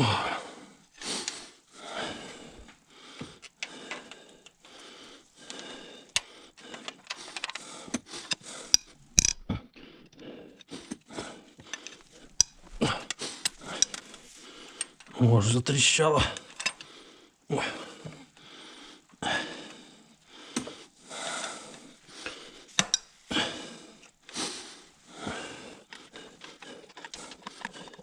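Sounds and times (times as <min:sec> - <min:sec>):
hand tools scraping and clicking: 0:01.0 - 0:01.4, 0:02.3 - 0:04.8, 0:05.4 - 0:15.2, 0:16.3 - 0:16.9, 0:21.4 - 0:23.4, 0:24.0 - 0:28.0.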